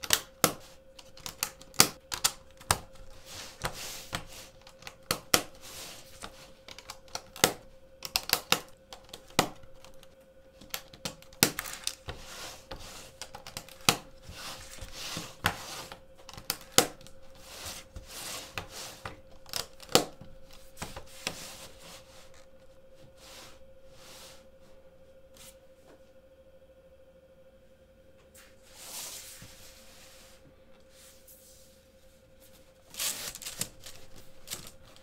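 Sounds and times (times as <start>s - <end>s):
faint steady hum: 0.0s - 35.0s
soft sliding rustle: 14.2s - 16.0s, 17.2s - 19.2s, 20.6s - 25.6s, 28.3s - 35.0s.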